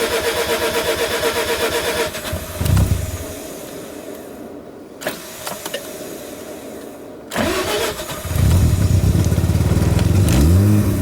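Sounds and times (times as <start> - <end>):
rotary engine cranking and starting: 7.3 - 11.0
engine running rough and revving: 8.2 - 11.0.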